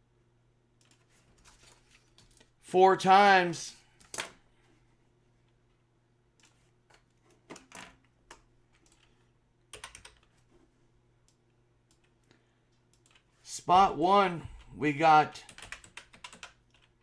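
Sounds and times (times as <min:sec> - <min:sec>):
computer keyboard typing: 0:09.7 - 0:10.3, 0:15.4 - 0:17.0.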